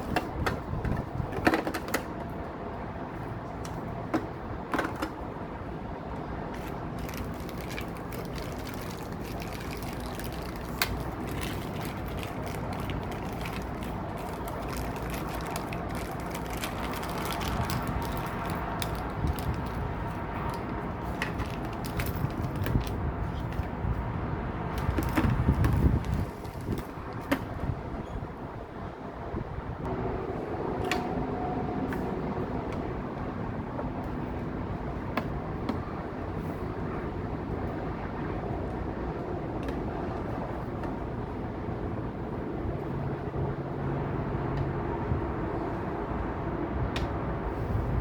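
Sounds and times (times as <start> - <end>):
steady background hum: 0.0 - 48.0
packaging rustling: 6.6 - 23.0.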